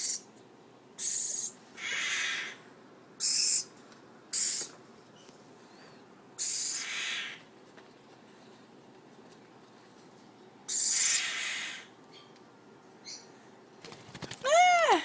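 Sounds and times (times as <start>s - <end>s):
bird chicks screeching: 10.7s - 11.9s.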